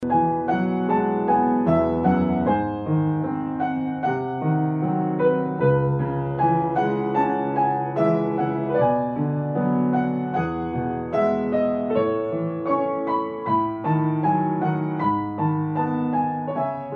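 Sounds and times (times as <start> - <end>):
gentle piano music: 0.0 - 16.9.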